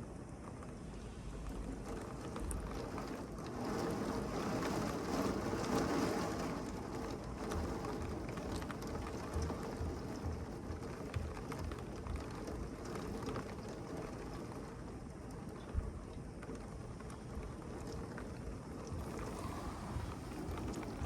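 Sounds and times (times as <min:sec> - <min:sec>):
heavy rain falling: 0:01.2 - 0:15.6, 0:18.8 - 0:21.0.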